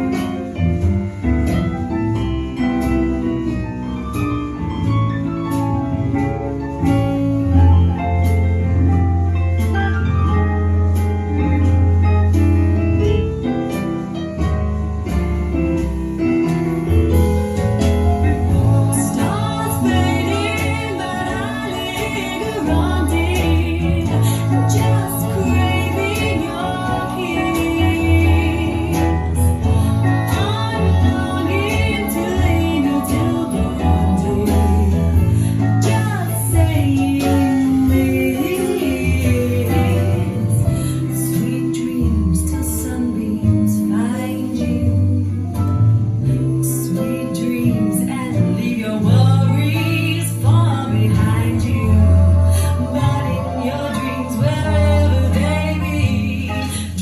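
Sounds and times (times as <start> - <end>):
strong bass line: 0.0 - 47.0
plucked guitar: 0.0 - 57.0
woman singing: 18.2 - 57.0.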